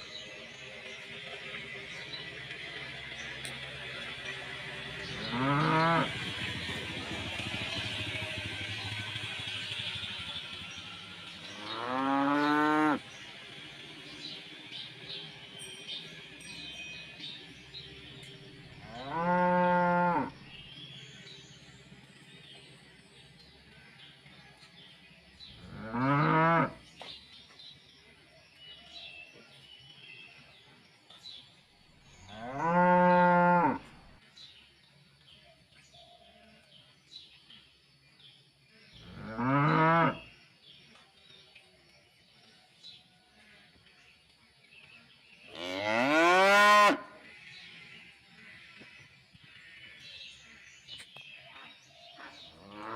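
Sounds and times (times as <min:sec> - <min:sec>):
cattle mooing: 0:05.1 - 0:06.2
cow mooing: 0:05.1 - 0:06.2, 0:11.4 - 0:13.0, 0:18.8 - 0:20.4, 0:25.6 - 0:26.8, 0:32.3 - 0:33.9, 0:39.0 - 0:40.2, 0:45.5 - 0:47.1, 0:52.6 - 0:52.9.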